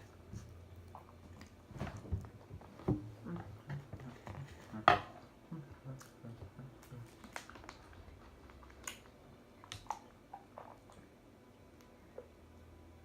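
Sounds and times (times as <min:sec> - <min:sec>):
faint chewing: 0:05.5 - 0:11.1.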